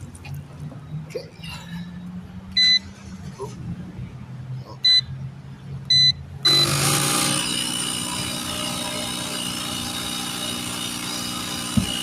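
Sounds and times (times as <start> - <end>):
air compressor running: 6.5 - 12.0.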